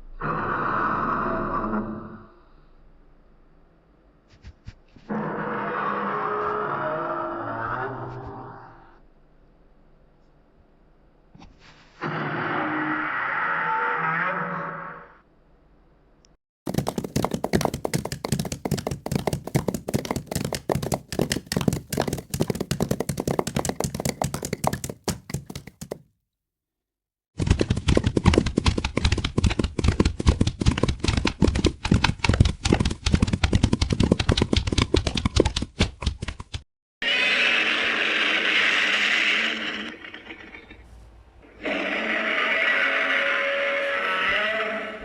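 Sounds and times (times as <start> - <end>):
rapid rattle of knocking clicks: 16.7 - 26.0.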